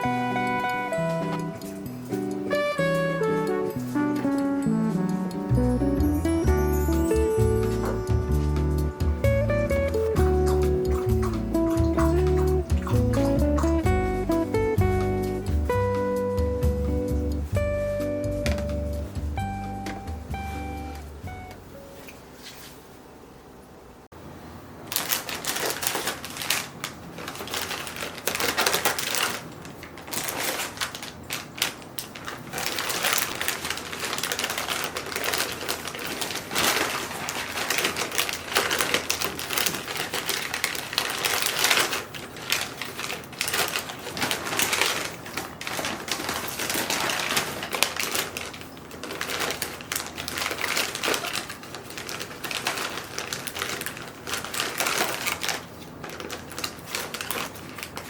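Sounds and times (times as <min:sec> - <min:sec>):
small hard objects clattering: 0:24.9 - 0:58.0.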